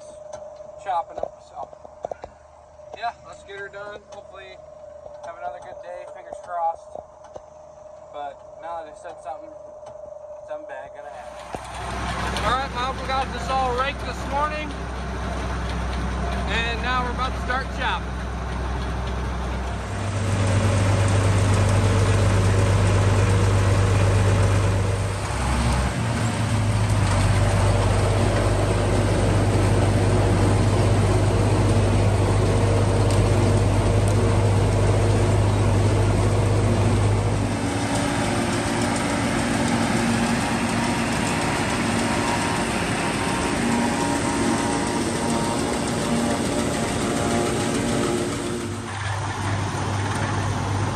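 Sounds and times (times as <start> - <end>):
diesel engine droning: 11.1 - 50.9
mechanical whir: 11.2 - 50.9.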